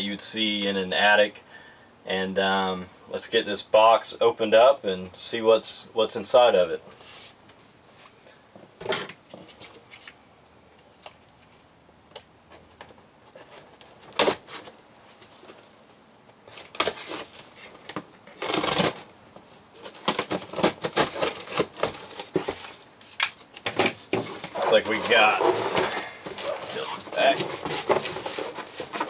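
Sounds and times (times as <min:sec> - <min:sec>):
cardboard box rustling: 0:19.8 - 0:22.8, 0:23.9 - 0:29.0.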